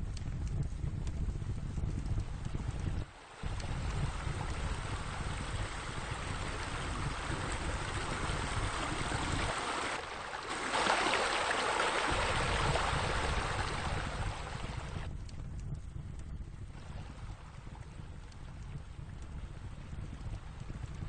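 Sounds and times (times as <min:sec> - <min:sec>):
running water rushing: 0:03.0 - 0:15.1.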